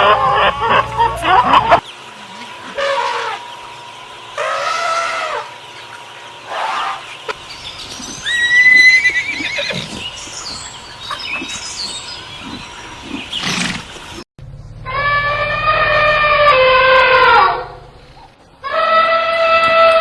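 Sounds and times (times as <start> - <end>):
horse whinnying: 8.2 - 10.0.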